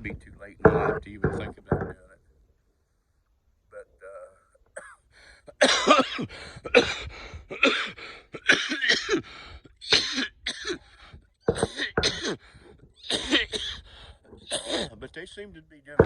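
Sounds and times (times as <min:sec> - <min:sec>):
man coughing: 0:04.0 - 0:10.9, 0:11.5 - 0:15.2.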